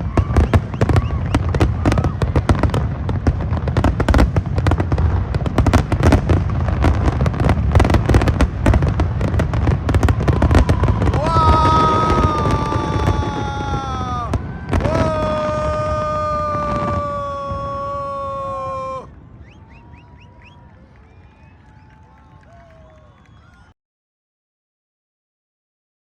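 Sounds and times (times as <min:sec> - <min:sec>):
fireworks bangs and crackles: 0:00.0 - 0:19.1
falling whistle tone: 0:00.2 - 0:01.6, 0:18.7 - 0:23.7.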